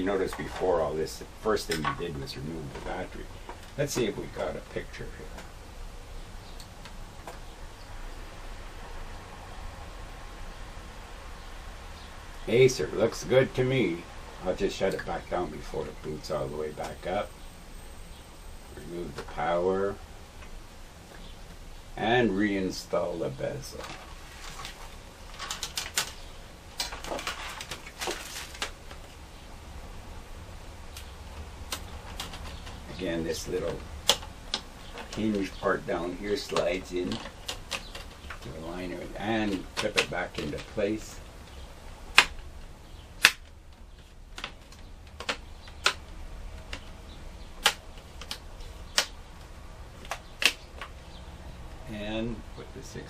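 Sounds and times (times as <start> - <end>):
plastic clips snapping: 26.8 - 29.1, 31.7 - 32.9, 33.7 - 35.3, 41.5 - 42.5, 43.2 - 46.9, 47.5 - 51.0.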